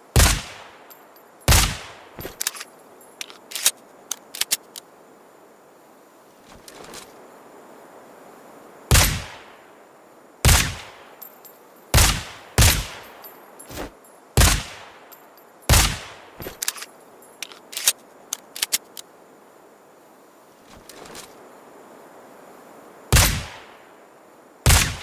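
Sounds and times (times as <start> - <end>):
suppressed pistol shots: 0.2 - 0.7, 1.5 - 2.6, 8.9 - 9.4, 10.4 - 10.9, 12.0 - 13.0, 14.4 - 14.9, 15.7 - 16.8, 23.1 - 23.6, 24.7 - 25.0
sharp metallic clicks: 0.2 - 4.8, 10.5 - 19.1.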